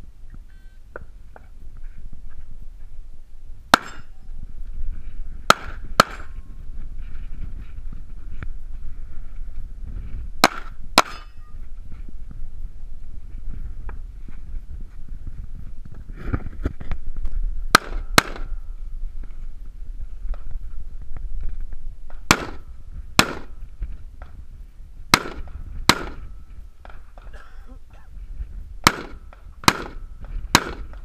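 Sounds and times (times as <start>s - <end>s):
low steady rumble: 0.0s - 31.0s
rifle shots: 17.7s - 18.5s, 22.3s - 22.6s, 23.2s - 23.5s, 25.1s - 26.2s, 28.8s - 30.9s.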